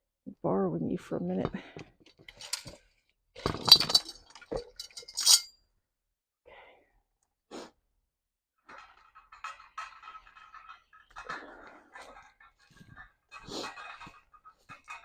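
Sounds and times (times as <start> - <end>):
hard objects clinking and rattling: 2.0 - 5.5, 8.7 - 11.4, 12.0 - 15.0.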